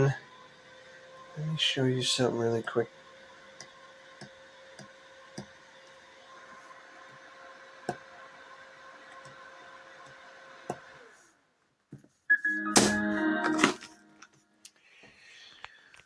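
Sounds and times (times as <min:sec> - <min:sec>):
cooling fan hum: 0:00.0 - 0:11.2.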